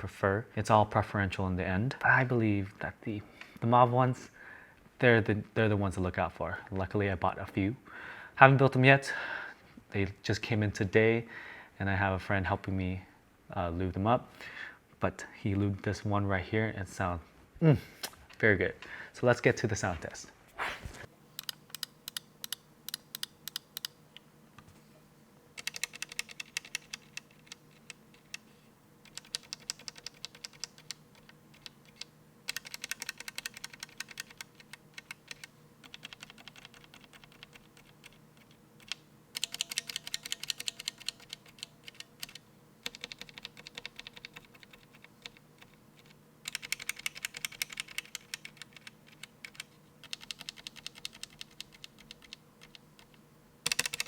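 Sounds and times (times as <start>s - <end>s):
mechanical keyboard typing: 21.4s - 23.9s, 25.6s - 54.0s.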